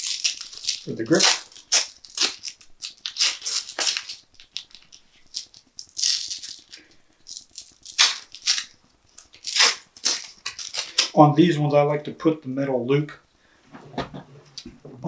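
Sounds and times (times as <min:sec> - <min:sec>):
hook-and-loop strap ripping: 0:00.0 - 0:11.2.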